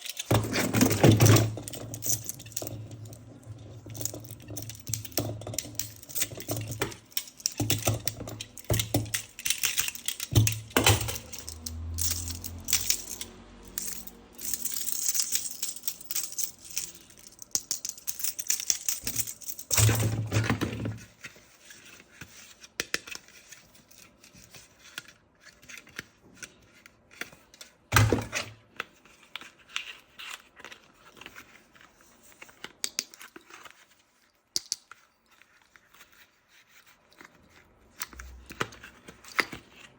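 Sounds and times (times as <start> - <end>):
plastic toy parts clicking: 0.0 - 20.8.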